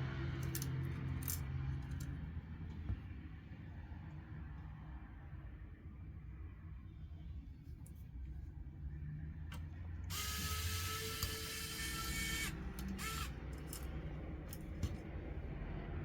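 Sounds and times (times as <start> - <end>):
electric screwdriver whirring: 10.1 - 13.4.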